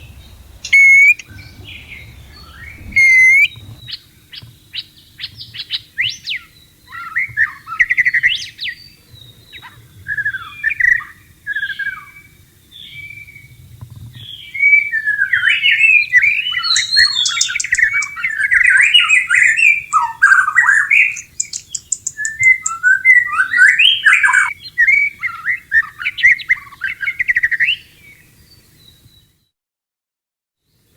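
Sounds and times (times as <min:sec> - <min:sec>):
bird singing whistled phrases: 0:00.0 - 0:04.0, 0:14.4 - 0:28.0
rapid high rattle: 0:00.0 - 0:04.1.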